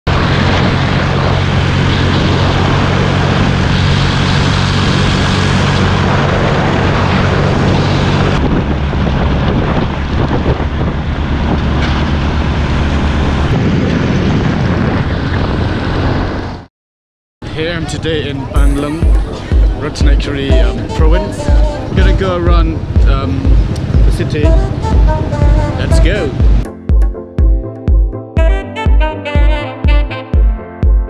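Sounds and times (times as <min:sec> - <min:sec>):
vehicle engine running: 0:00.1 - 0:14.2, 0:18.6 - 0:26.7
wind noise on microphone: 0:00.1 - 0:16.7, 0:18.4 - 0:26.6.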